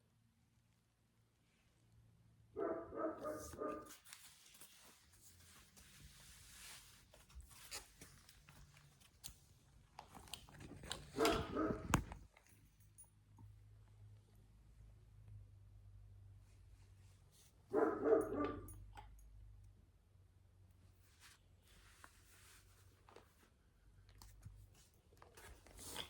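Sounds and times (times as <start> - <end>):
rustling: 3.2 - 12.3.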